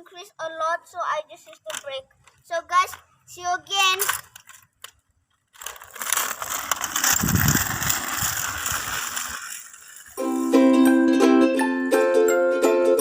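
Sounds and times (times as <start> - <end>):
scooter wheels rolling and rattling: 0.2 - 11.5
ukulele music: 10.2 - 13.0.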